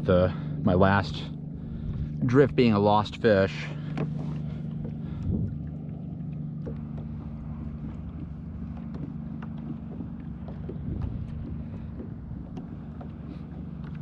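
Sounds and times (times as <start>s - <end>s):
boat engine droning: 0.0s - 14.0s
wind noise: 5.1s - 5.6s.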